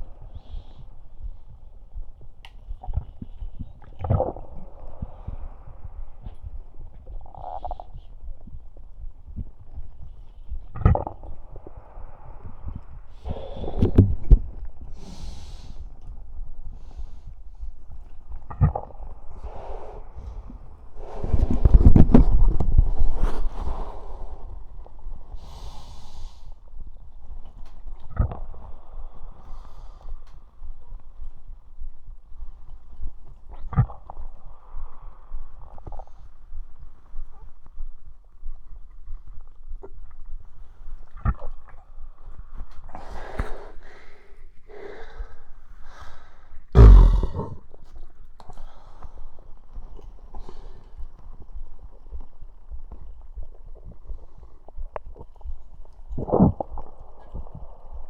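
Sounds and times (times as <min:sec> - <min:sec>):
stomach rumble with rapid clicks: 0:00.0 - 0:58.0
loud low burp: 0:46.8 - 0:47.6.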